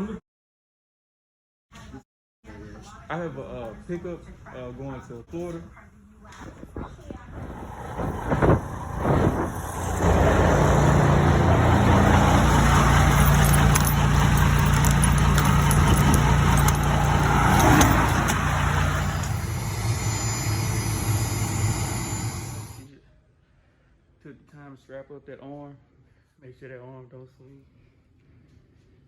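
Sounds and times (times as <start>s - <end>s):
diesel truck engine running: 7.3s - 22.8s
rattles: 7.4s - 22.8s.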